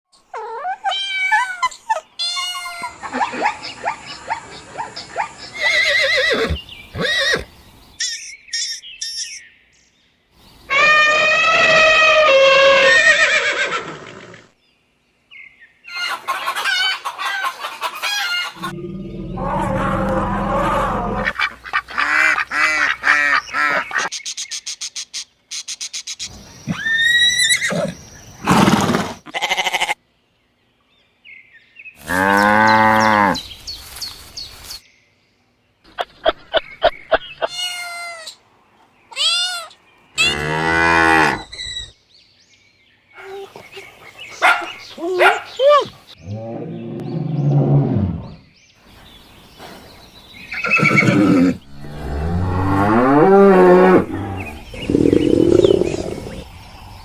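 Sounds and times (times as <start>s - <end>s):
bird calls: 0.1s - 10.0s, 35.8s - 40.4s, 41.4s - 53.2s, 53.8s - 56.6s
farm animal calls: 50.5s - 56.5s.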